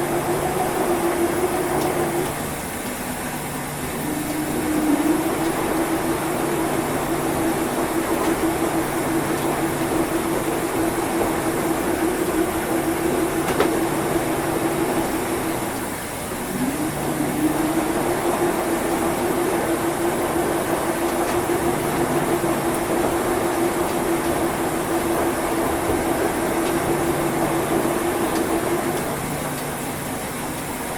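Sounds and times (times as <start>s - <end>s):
washing machine churning: 0.0s - 30.9s
washing machine motor hum: 0.0s - 30.9s
short rising whine: 3.8s - 15.8s, 16.4s - 23.5s.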